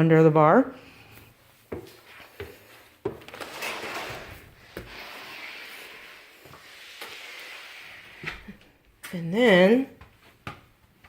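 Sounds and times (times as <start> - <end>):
rustling and rubbing hiss: 1.6 - 8.5.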